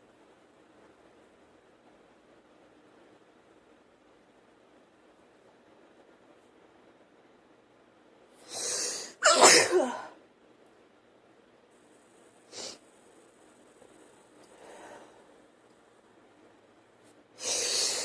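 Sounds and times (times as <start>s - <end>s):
woman sneezing: 8.6s - 10.2s
sniff: 12.5s - 12.8s.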